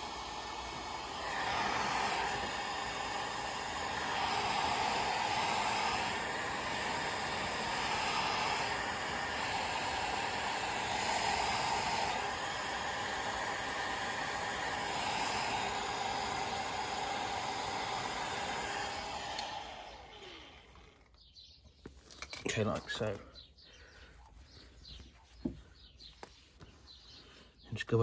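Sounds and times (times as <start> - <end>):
heat gun blowing hot air: 0.0 - 21.1.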